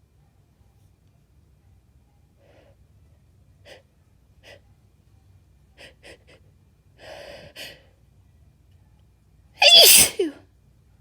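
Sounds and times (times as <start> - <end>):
woman breathing between sneezes: 9.6 - 10.4
woman sneezing: 9.6 - 10.4.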